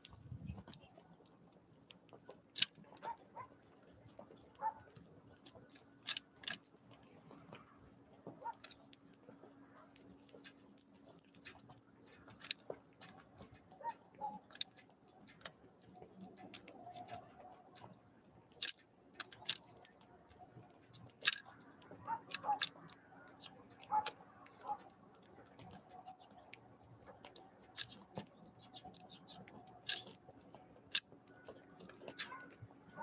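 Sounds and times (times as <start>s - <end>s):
birds pecking taps: 18.6s - 33.0s.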